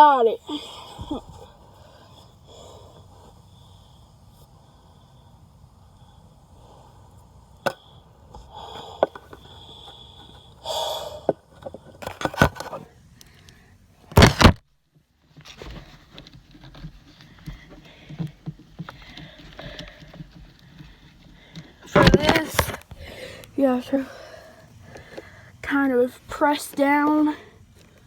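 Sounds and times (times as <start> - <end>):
rustling: 11.6 - 25.4.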